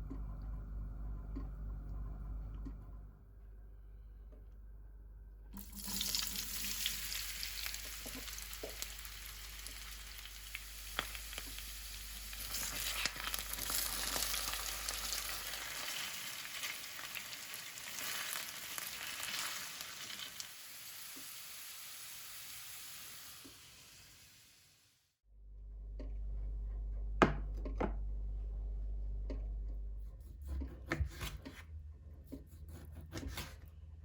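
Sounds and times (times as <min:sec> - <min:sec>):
food sizzling in hot oil: 0:05.6 - 0:24.9.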